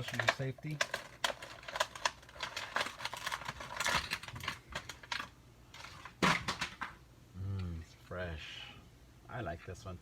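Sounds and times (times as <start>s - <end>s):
plastic tearing: 0.0s - 6.8s
plastic packaging crackling: 0.0s - 6.9s.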